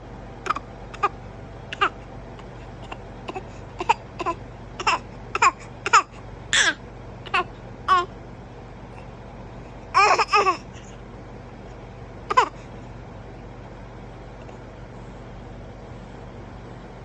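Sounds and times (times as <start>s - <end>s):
baby making fake coughs: 0.5s - 1.1s, 1.7s - 8.1s, 10.0s - 10.7s, 12.3s - 12.6s.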